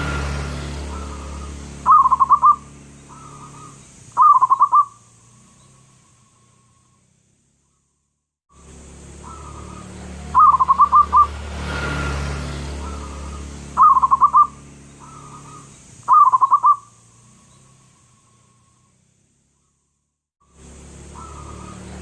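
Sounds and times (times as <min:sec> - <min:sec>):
dove cooing: 0:00.8 - 0:05.0, 0:09.2 - 0:11.4, 0:12.8 - 0:16.9, 0:21.1 - 0:22.0.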